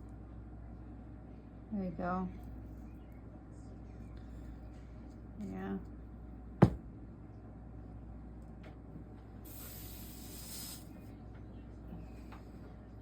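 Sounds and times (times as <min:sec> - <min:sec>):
soldering iron hiss: 0:09.4 - 0:10.9.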